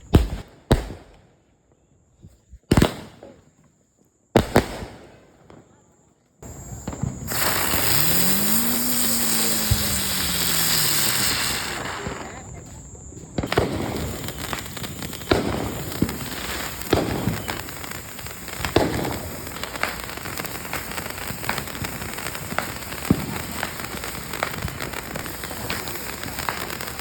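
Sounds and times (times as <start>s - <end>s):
firework pops: 0.1s - 1.2s, 4.4s - 5.6s, 6.4s - 27.0s
firework hissing and crackling: 6.4s - 27.0s.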